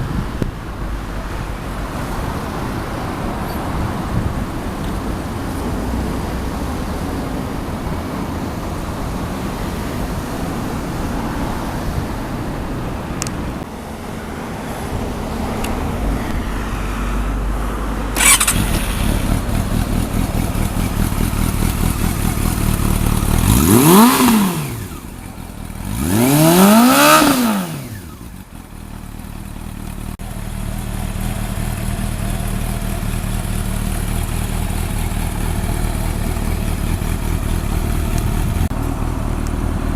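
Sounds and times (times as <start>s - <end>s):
motorcycle engine idling and revving: 12.9s - 39.9s.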